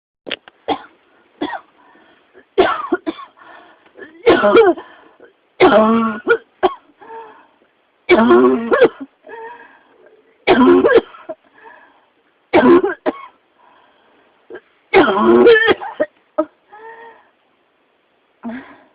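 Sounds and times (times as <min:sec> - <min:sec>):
person coughing harshly: 0:00.7 - 0:01.7, 0:02.4 - 0:03.4, 0:04.0 - 0:05.0, 0:05.6 - 0:06.8, 0:08.1 - 0:09.2, 0:10.4 - 0:11.4, 0:12.5 - 0:13.4, 0:14.5 - 0:16.6
faint breaths: 0:01.0 - 0:02.6, 0:03.3 - 0:04.1, 0:04.8 - 0:05.4, 0:07.0 - 0:07.8, 0:09.2 - 0:10.4, 0:11.4 - 0:12.3, 0:13.4 - 0:14.9, 0:16.6 - 0:17.5.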